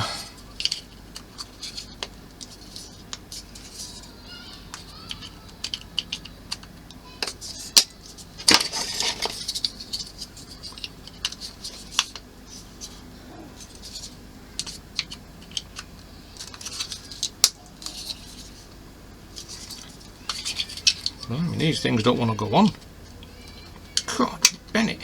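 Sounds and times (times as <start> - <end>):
plastic parts clicking and tapping: 4.7 - 13.0, 13.6 - 18.7, 19.4 - 21.3.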